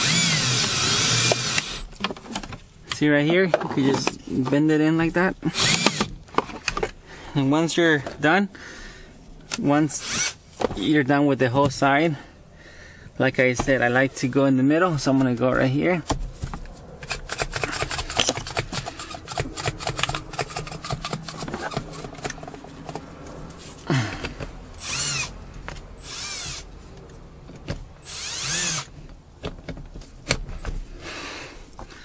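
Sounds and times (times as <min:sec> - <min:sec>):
drill whine: 0:00.0 - 0:01.9, 0:05.5 - 0:06.1, 0:24.8 - 0:25.3, 0:26.0 - 0:26.6, 0:28.0 - 0:28.9.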